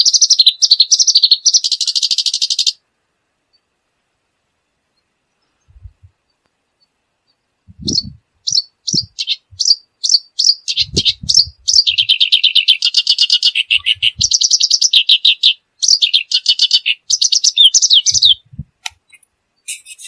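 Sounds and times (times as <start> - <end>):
reed warbler singing: 0.0 - 2.8, 4.8 - 20.0
soft low thumps: 5.7 - 6.2, 7.7 - 8.3, 8.9 - 9.7, 10.8 - 12.1.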